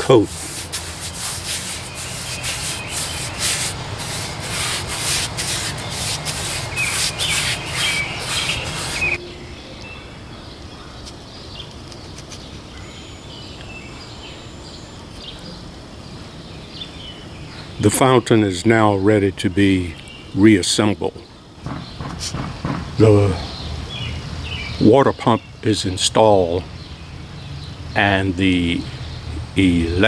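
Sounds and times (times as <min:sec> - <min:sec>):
paintbrush scrubbing on concrete: 0:00.0 - 0:09.2
faint bird chirps: 0:05.8 - 0:17.9.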